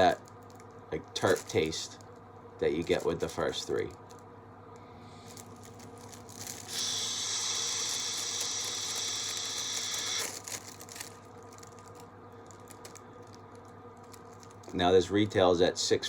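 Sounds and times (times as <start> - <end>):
hiss of rushing air: 6.7 - 10.3.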